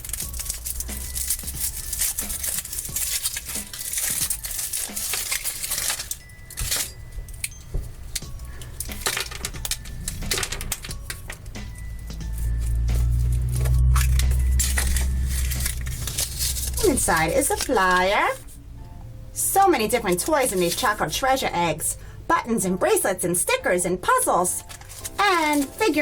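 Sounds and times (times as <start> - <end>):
chocolate cracking: 0.0 - 11.5, 13.6 - 18.5
foil wrapper crinkling: 0.0 - 18.6, 19.9 - 21.1, 24.5 - 26.0.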